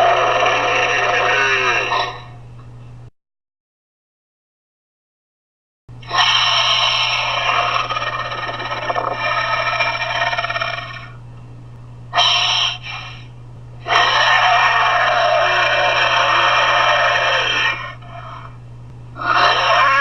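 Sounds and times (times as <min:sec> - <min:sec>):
steady low hum: 0:00.0 - 0:03.1, 0:05.9 - 0:20.0
altered voice creature calls: 0:19.2 - 0:20.0.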